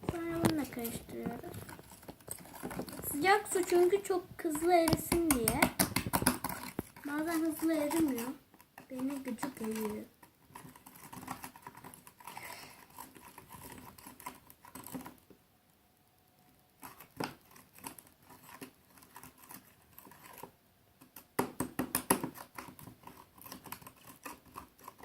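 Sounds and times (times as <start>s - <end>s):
utensil tapping cup sides: 4.6s - 6.6s.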